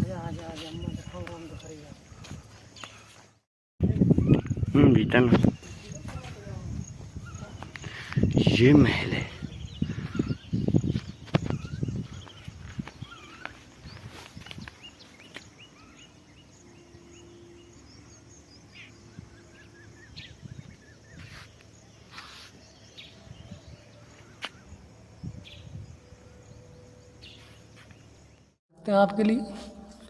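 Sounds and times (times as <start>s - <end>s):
bird chirps and calls: 3.9s - 25.8s.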